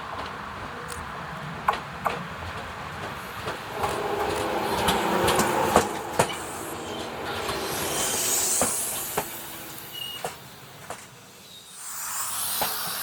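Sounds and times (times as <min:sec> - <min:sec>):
train wheels clacking over rails: 0:00.0 - 0:11.3
train rumble: 0:00.0 - 0:11.4
train wheels squealing: 0:03.2 - 0:13.0.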